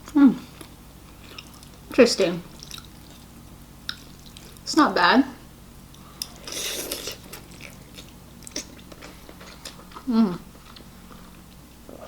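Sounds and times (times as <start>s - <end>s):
chewing with mouth clicks: 0.5s - 1.8s, 2.5s - 4.6s, 5.9s - 11.4s.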